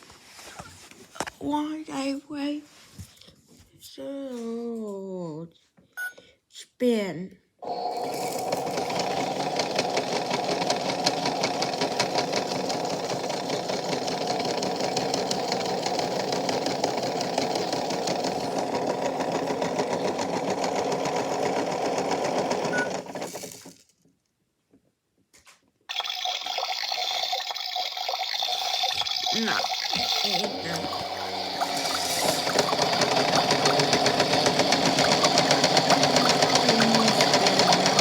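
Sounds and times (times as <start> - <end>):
toy motor whirring and ticking: 7.9 - 23.8, 25.9 - 38.0.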